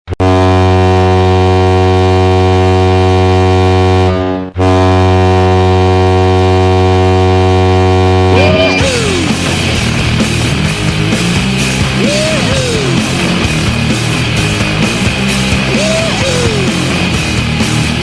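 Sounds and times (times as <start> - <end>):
goal horn blasts: 0.1 - 9.9
rock song: 8.0 - 18.0.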